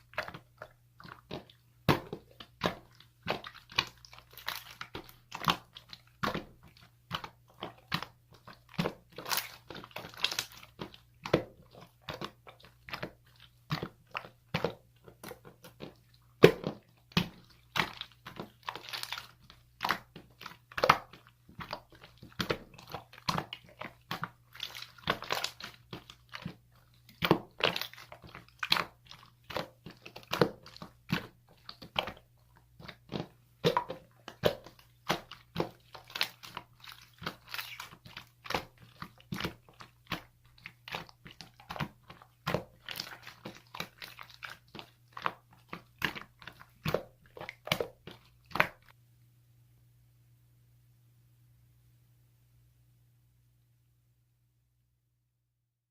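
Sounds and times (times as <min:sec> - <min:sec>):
crunchy food being chewed: 0:00.0 - 0:48.9
faint low hum: 0:48.2 - 0:55.2.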